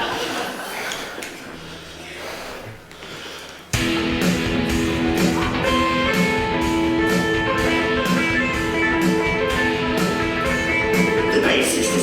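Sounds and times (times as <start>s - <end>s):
strummed electric guitars: 3.7s - 12.0s
steady drum beat: 3.8s - 12.0s.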